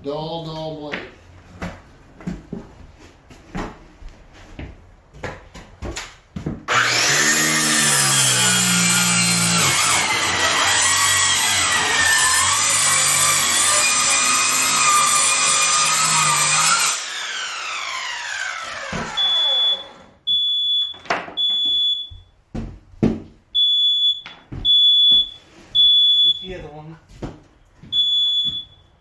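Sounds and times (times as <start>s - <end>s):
power saw cutting: 6.7s - 20.0s
smoke alarm beeping: 19.1s - 22.4s, 23.5s - 26.7s, 27.8s - 29.0s.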